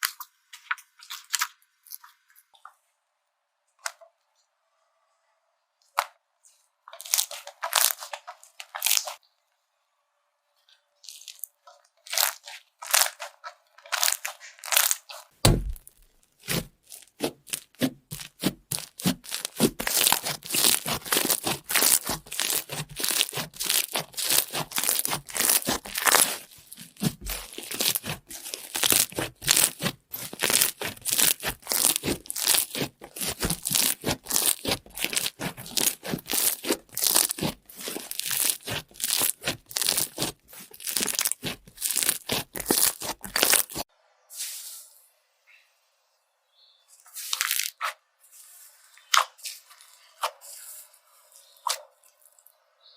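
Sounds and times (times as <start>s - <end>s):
slime squeezed with sticky pops: 12.1s - 43.8s.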